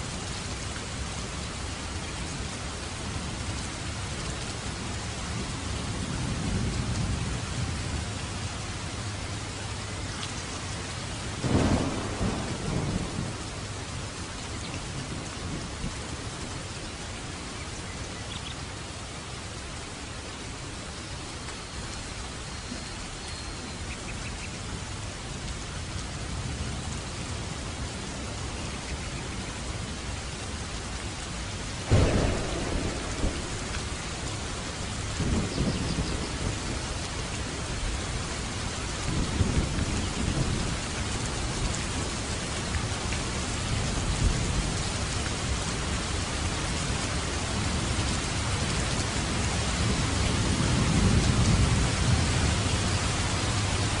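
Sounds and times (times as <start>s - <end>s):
steady rainfall: 0.0s - 54.0s
low rolling thunder rumbles: 4.0s - 9.3s, 11.2s - 16.6s, 31.8s - 54.0s
sharp thunderclap: 11.4s - 13.6s, 31.9s - 36.9s.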